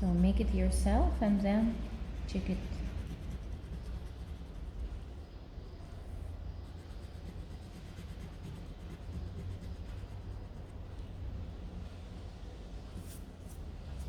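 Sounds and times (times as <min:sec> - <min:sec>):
low steady hum: 0:00.0 - 0:14.0
colouring scratching on paper: 0:00.4 - 0:05.3, 0:06.5 - 0:11.8.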